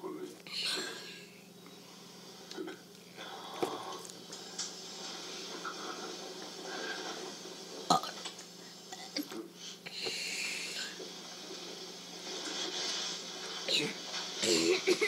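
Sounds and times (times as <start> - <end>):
steady low hum: 0.0 - 15.0
person burping: 7.9 - 8.2.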